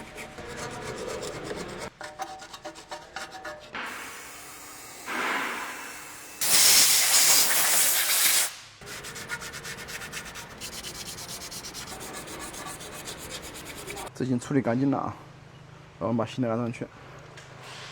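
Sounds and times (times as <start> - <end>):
abrasive scrubbing on metal: 0.0 - 4.4, 8.8 - 14.1
compressed air hissing: 3.8 - 8.8.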